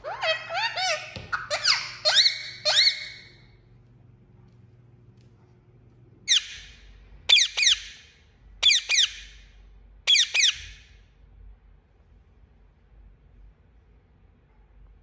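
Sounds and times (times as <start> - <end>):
parakeet high-pitched chirps: 0.0 - 3.5, 6.3 - 9.4, 10.1 - 10.9.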